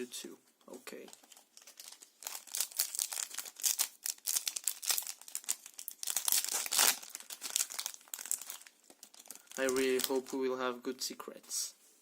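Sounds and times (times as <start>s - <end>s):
foil wrapper crinkling and tearing: 1.3s - 10.4s.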